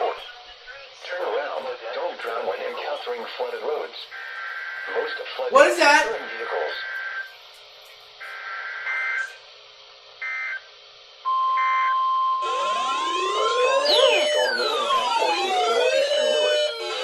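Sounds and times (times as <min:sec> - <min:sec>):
electronic siren wails: 0:11.3 - 0:17.0
steady electronic alert tone: 0:11.3 - 0:17.0
two-tone warbling data bursts: 0:11.3 - 0:17.0.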